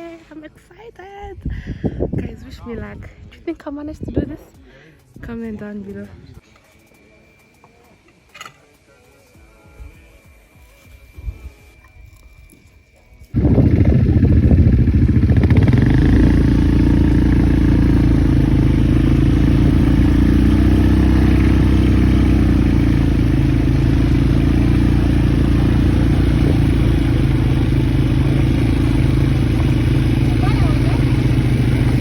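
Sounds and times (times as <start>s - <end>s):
quad bike engine running: 13.3s - 32.0s.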